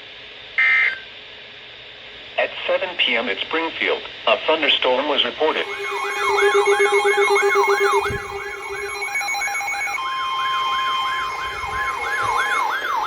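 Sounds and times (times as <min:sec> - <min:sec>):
electronic siren yelping: 0:05.5 - 0:13.0
steady high tone: 0:05.5 - 0:13.0.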